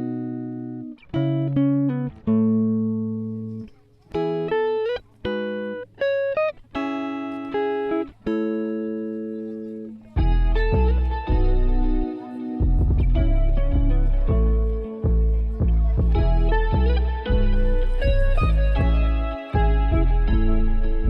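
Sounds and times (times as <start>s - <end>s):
plucked guitar melody: 0.0s - 21.0s
deep low sound: 12.6s - 21.0s.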